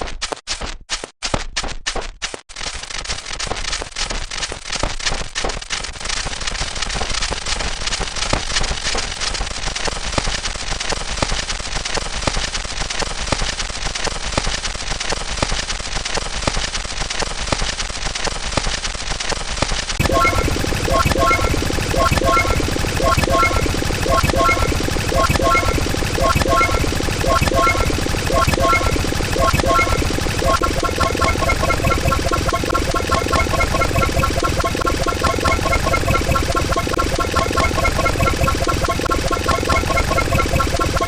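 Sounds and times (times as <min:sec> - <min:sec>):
spliced sound effect clips: 0:20.0 - 0:41.0.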